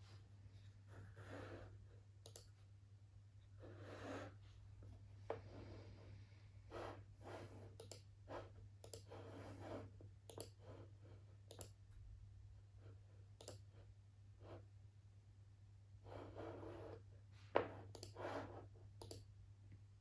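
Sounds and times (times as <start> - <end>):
rubbing sounds of desk work: 0.0 - 1.9, 3.5 - 11.4, 14.4 - 14.7, 16.0 - 18.8
computer mouse clicking: 2.2 - 2.6, 7.7 - 8.1, 8.8 - 9.3, 10.2 - 10.6, 11.4 - 11.8, 13.4 - 13.7, 17.9 - 18.2, 19.0 - 19.3.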